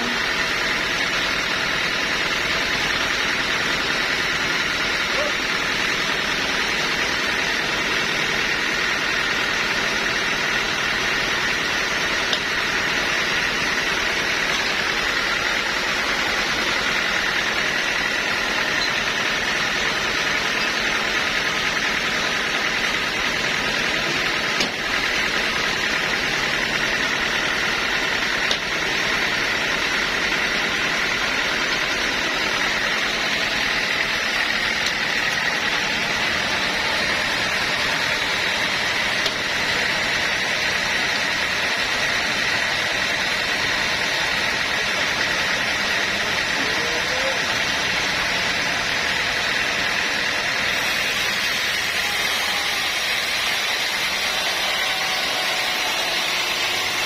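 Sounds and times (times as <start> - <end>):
high machine whine: 0.0 - 57.0
sawmill machinery running: 0.0 - 57.0.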